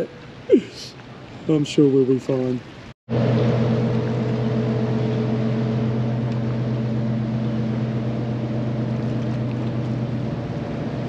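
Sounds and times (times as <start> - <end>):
boat engine droning: 3.1 - 11.0.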